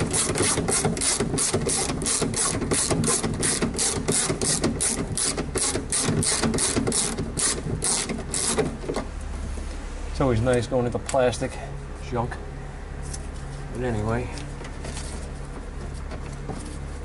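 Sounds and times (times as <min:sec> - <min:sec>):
ratchet wrench clicking: 0:00.1 - 0:08.6.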